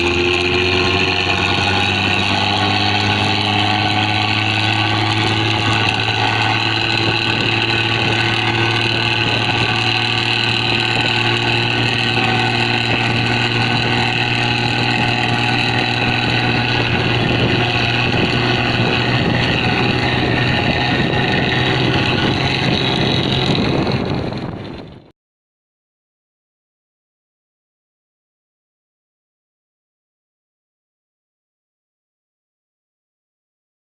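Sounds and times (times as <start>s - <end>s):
deep rumbling engine exhaust: 0.0s - 25.1s.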